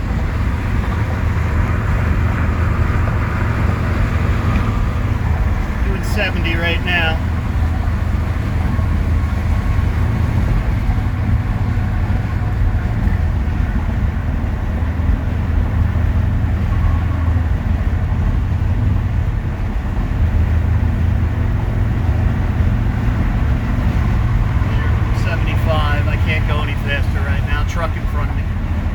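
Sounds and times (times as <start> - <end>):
car engine drone: 0.0 - 28.9
tyre and road noise: 0.0 - 28.9.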